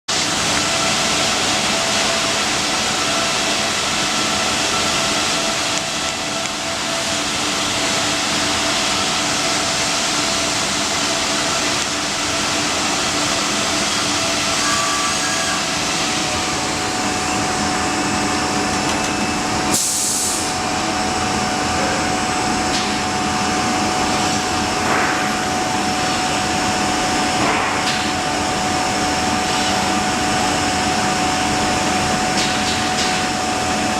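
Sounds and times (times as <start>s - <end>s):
workshop machinery running: 0.1s - 33.9s
sharp air hiss: 19.7s - 20.6s.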